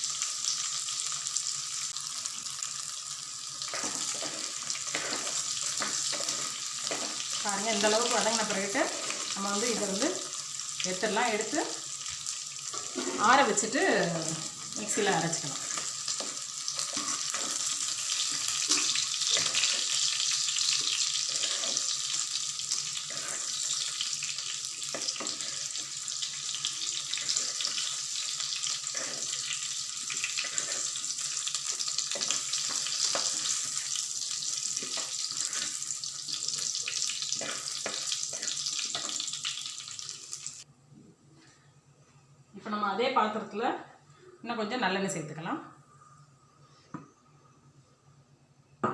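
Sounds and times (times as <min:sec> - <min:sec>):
food sizzling in oil: 0:00.0 - 0:40.7
stirring knocks and scrapes: 0:12.7 - 0:13.4, 0:15.5 - 0:20.1, 0:20.7 - 0:22.2, 0:24.9 - 0:25.9, 0:28.7 - 0:31.1, 0:32.1 - 0:33.8.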